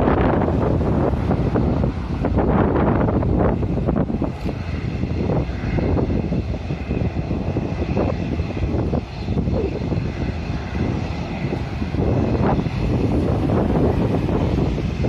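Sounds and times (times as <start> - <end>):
airliner engines rumbling: 0.0 - 15.0
wind buffeting microphone: 0.0 - 15.0.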